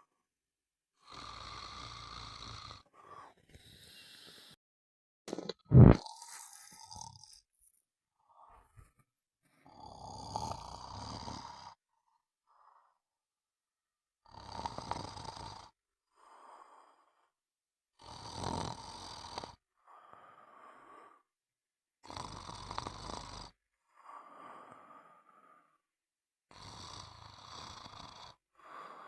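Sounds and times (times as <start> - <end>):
loud snoring: 1.0 - 2.9, 9.7 - 11.8, 14.2 - 15.8, 18.0 - 19.6, 22.0 - 23.6, 26.5 - 29.0.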